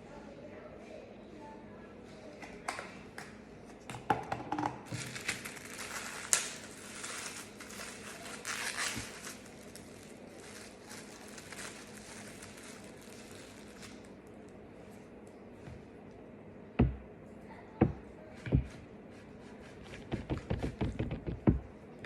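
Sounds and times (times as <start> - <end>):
food packaging crinkling: 4.9 - 14.6.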